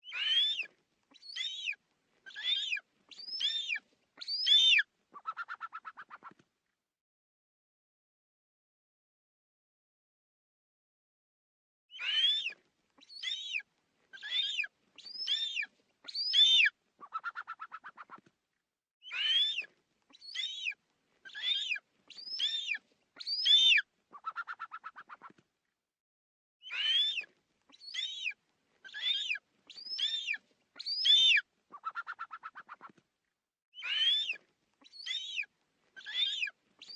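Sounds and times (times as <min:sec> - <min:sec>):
eagle screeching: 0:14.2 - 0:14.6, 0:19.1 - 0:21.8, 0:26.7 - 0:28.3, 0:33.8 - 0:36.5.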